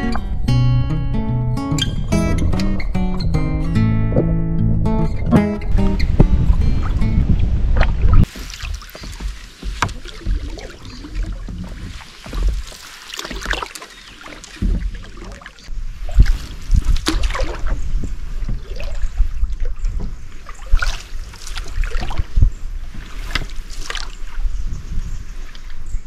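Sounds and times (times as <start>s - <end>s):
water washing around hull: 5.6s - 26.0s
paddle splashing in water: 6.0s - 26.0s.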